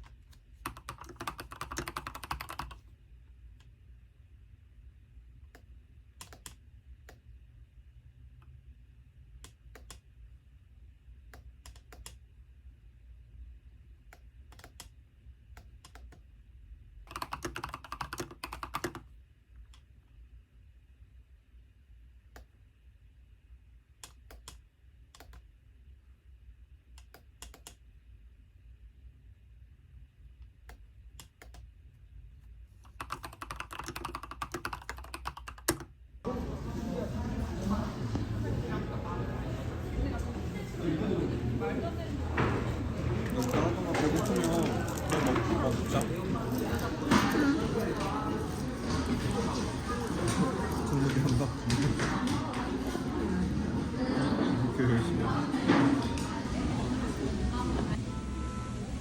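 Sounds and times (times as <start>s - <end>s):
mechanical keyboard typing: 0.6s - 2.8s, 17.1s - 19.1s, 32.9s - 35.9s, 43.2s - 47.3s
steady background noise: 36.2s - 59.0s.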